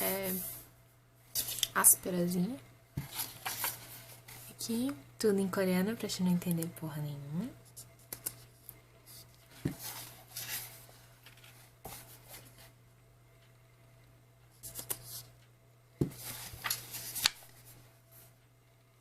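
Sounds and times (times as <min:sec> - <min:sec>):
paper pages rustling: 0:03.0 - 0:04.6, 0:09.2 - 0:12.7, 0:14.6 - 0:15.3, 0:16.1 - 0:17.8.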